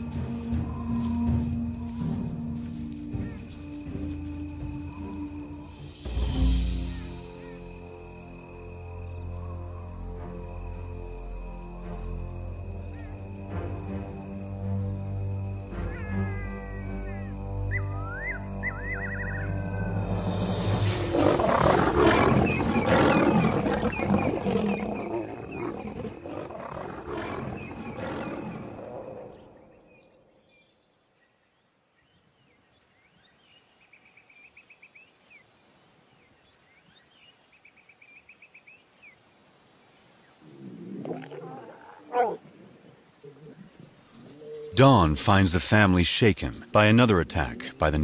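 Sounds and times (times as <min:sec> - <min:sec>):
lions snarling and roaring: 0:18.6 - 0:29.7, 0:40.4 - 0:45.2, 0:46.4 - 0:48.0.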